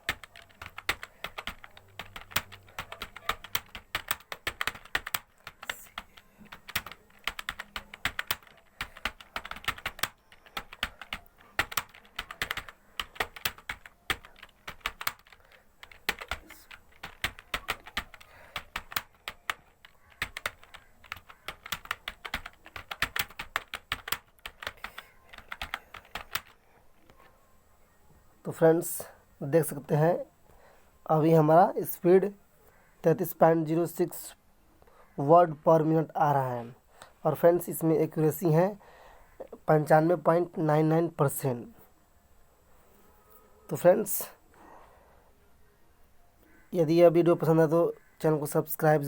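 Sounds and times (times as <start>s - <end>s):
typing on computer keyboard: 0.0s - 26.6s.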